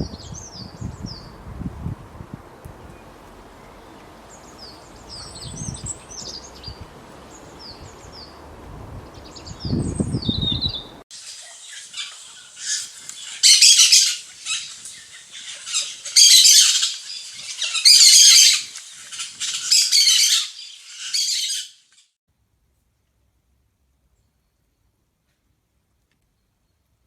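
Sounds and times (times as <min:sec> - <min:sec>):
harsh scratchy bird calls: 0:09.2 - 0:22.2.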